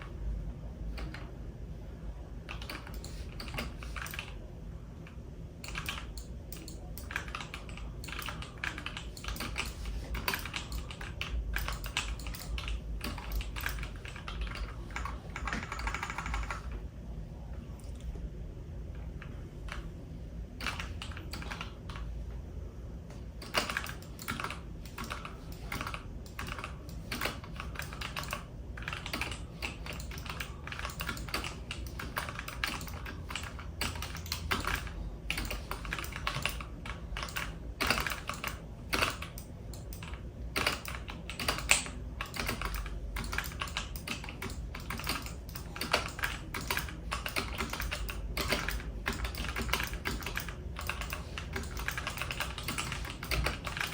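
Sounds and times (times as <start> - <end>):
low steady hum: 0.0 - 53.9
keyboard keys clacking: 5.6 - 16.8, 23.4 - 53.9.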